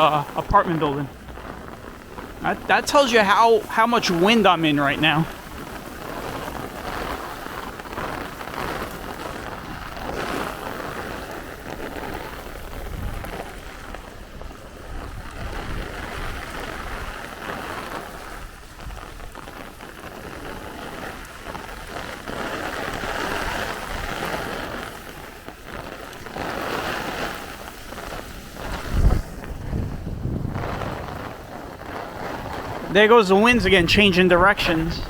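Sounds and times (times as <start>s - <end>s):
wind gusting: 0.0s - 19.4s, 22.5s - 35.0s
heavy rain on pavement: 0.0s - 35.0s.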